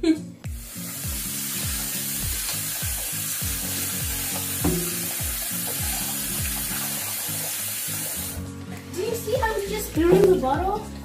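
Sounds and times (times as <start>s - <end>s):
food sizzling in a pan: 0.6s - 8.4s
utensil knocking on pan: 4.6s - 5.4s.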